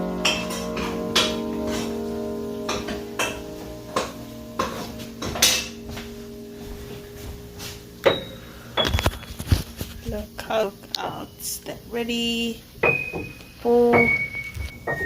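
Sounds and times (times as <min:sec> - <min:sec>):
kitchen utensils clinking and knocking: 0:00.0 - 0:05.9, 0:08.0 - 0:09.7, 0:12.8 - 0:13.4.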